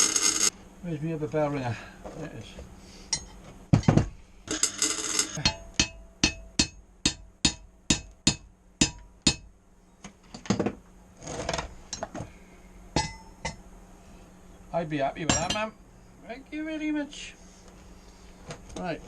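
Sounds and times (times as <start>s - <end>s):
hammer striking steel: 4.5s - 9.5s, 13.0s - 13.6s.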